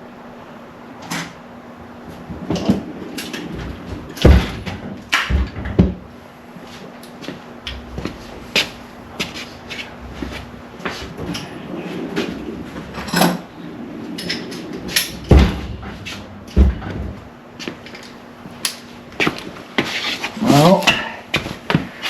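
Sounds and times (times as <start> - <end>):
heavy thumps: 3.6 - 6.2, 15.1 - 17.4.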